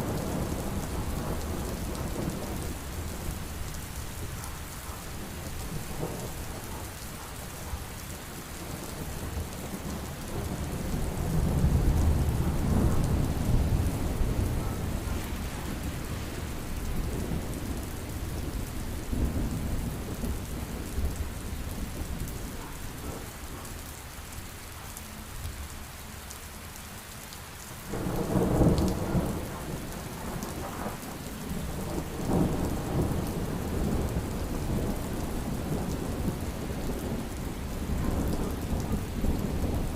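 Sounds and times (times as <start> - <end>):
heavy rain falling: 0.0 - 39.9
rolling thunder: 8.6 - 23.6, 27.9 - 39.9.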